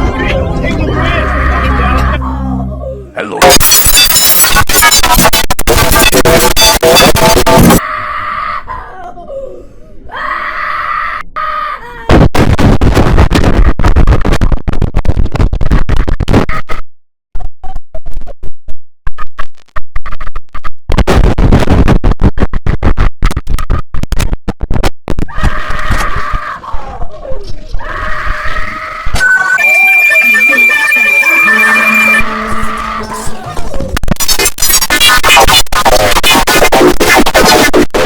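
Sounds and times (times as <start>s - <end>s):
distorted stuttering computer sound: 3.4s - 7.8s, 28.6s - 38.0s.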